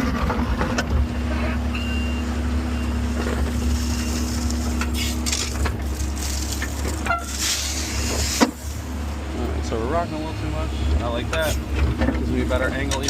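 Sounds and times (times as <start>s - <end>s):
excavator engine running: 0.0s - 13.0s
bucket scraping dirt and rock: 3.0s - 8.9s.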